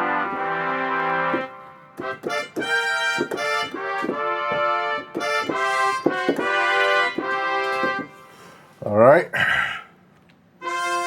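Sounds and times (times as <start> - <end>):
synthesizer trumpet notes: 0.0 - 8.3, 10.6 - 11.0.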